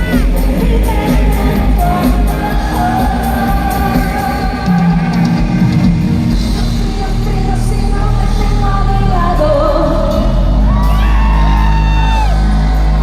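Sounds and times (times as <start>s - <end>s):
live pop-rock band: 0.0s - 13.0s.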